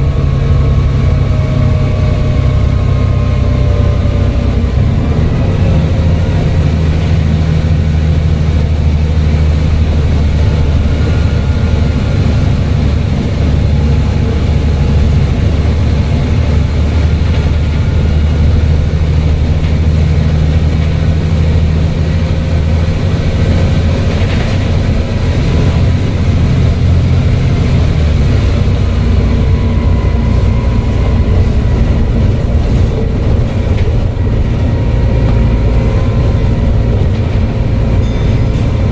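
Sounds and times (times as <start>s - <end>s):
bus diesel engine running: 0.0s - 38.9s
faint turbo whistle: 10.2s - 18.8s, 26.9s - 33.0s, 34.8s - 37.2s.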